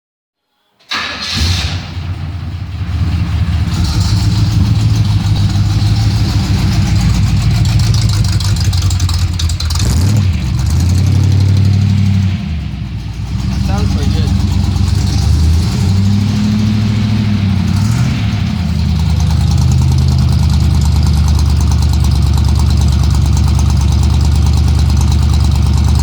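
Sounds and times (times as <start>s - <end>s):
deep car exhaust rumble: 1.9s - 26.0s
engine lifter tick: 3.9s - 12.1s.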